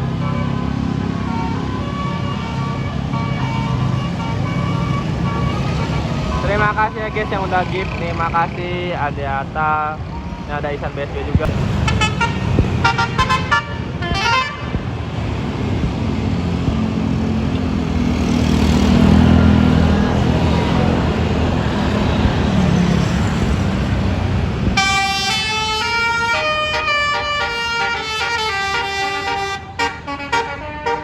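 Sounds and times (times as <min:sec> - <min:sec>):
musical bus horn melody: 0:00.0 - 0:07.6, 0:11.8 - 0:15.2, 0:24.7 - 0:31.0
bus engine rumble: 0:00.0 - 0:31.0.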